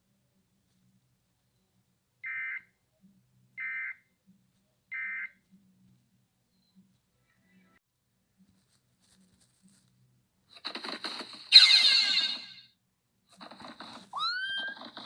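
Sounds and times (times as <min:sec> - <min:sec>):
shrill electronic data tones: 0:11.5 - 0:12.6.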